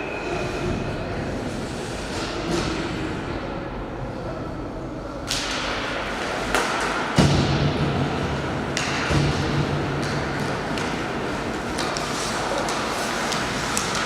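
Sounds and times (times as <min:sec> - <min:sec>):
hockey sticks hitting puck: 0:05.2 - 0:14.0
skates scraping ice: 0:08.2 - 0:14.0.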